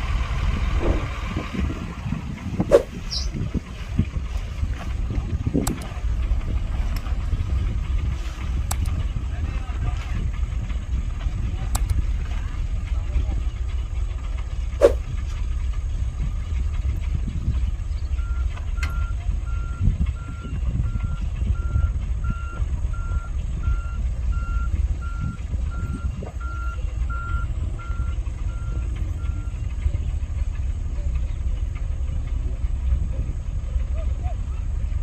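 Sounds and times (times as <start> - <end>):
heavy engine rumble: 0.0 - 35.0
reversing alarm beeping: 18.2 - 29.6.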